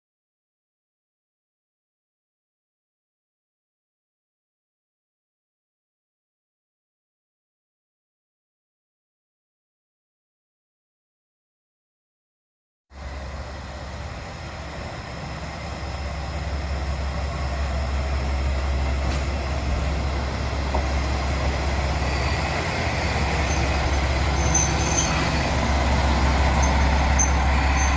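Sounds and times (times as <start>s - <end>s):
diesel railcar engine rumble: 12.9s - 27.9s
high-pitched squeals: 19.9s - 27.9s.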